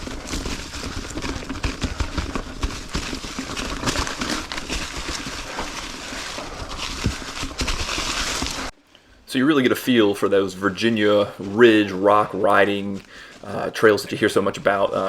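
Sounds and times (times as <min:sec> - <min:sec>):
bike knocking and clattering: 0:00.0 - 0:08.7
tyres crunching on rock: 0:00.0 - 0:08.7.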